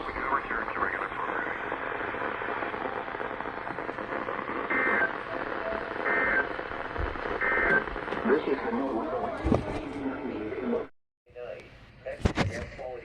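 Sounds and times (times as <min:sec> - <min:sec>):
buzzy digital data bursts: 0:00.0 - 0:08.1
radio static hiss: 0:00.0 - 0:10.9, 0:12.1 - 0:13.0.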